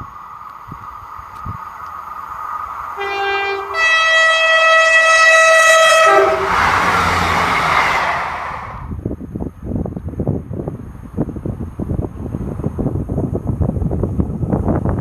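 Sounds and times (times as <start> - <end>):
train passing: 0.0 - 9.2
two-tone locomotive horn: 3.0 - 8.9.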